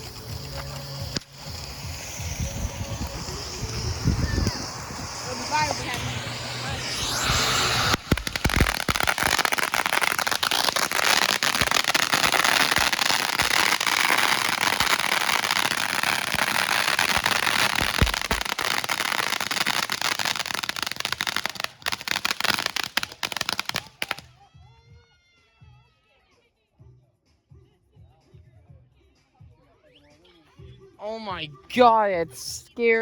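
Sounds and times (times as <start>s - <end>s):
fireworks crackling pops: 0.0s - 24.3s.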